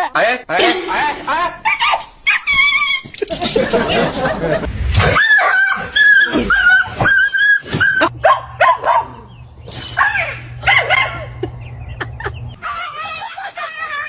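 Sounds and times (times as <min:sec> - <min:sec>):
dog yipping and barking: 0:01.6 - 0:03.1, 0:05.2 - 0:09.2, 0:10.0 - 0:11.3
low hum: 0:03.2 - 0:06.8.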